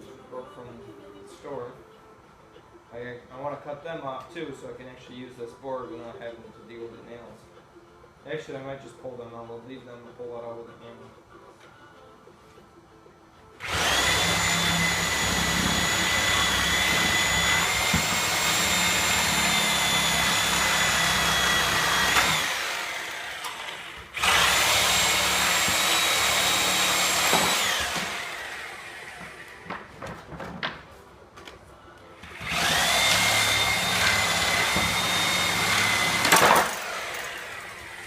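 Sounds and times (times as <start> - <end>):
reciprocating saw cutting nails: 13.6 - 29.6, 32.2 - 38.0.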